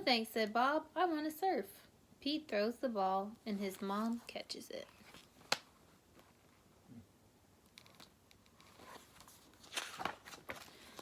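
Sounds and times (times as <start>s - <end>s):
paper pages rustling: 7.7s - 11.0s.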